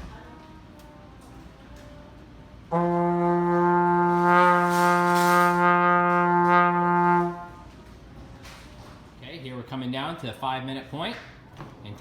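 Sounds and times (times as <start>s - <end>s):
trombone holding a long note: 2.7s - 7.7s.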